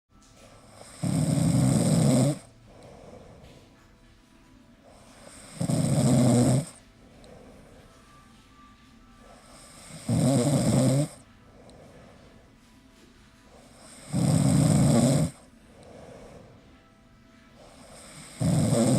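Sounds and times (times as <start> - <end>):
loud snores: 0.5 - 3.6, 4.9 - 7.9, 9.3 - 12.2, 13.5 - 16.6, 17.6 - 18.9.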